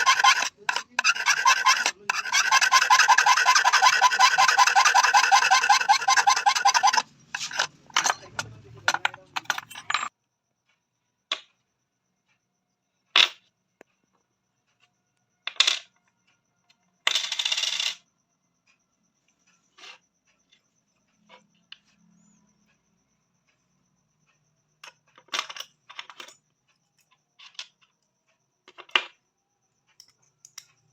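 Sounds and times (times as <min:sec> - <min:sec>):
hand file rasping on steel: 0:00.0 - 0:09.0
rattling clatter: 0:00.0 - 0:10.1.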